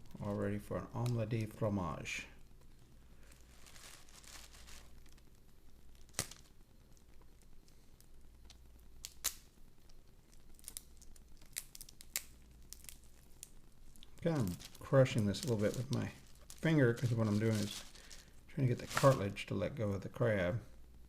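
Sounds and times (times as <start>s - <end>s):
crab shell being crushed: 6.0s - 6.5s, 8.5s - 9.6s, 10.4s - 18.2s.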